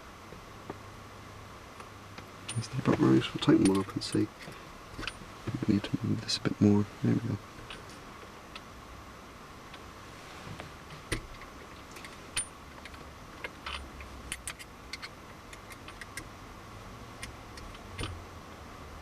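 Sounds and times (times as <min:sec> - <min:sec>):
light metallic clicks and taps: 0:01.8 - 0:05.9.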